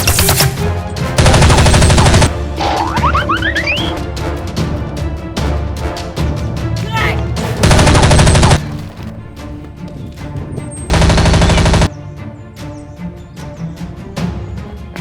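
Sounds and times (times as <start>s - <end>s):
automatic gunfire: 1.2s - 2.3s, 7.6s - 8.6s, 10.9s - 11.9s.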